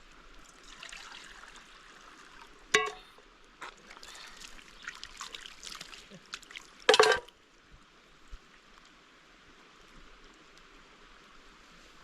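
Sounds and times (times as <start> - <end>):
water pouring and trickling: 0.0 - 7.4
sharp ringing knock: 2.8 - 3.0.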